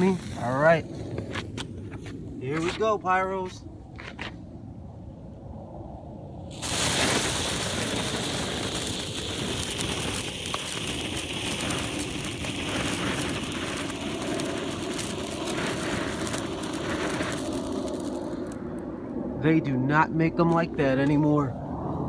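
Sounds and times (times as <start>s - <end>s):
fountain firework hissing sparks: 0.0s - 1.2s, 6.5s - 18.8s
faint crackling: 6.5s - 18.8s.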